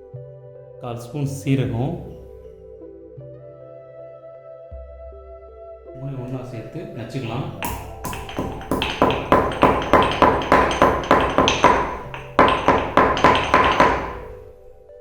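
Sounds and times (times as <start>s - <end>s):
pestle pounding spices in mortar: 7.6s - 14.6s.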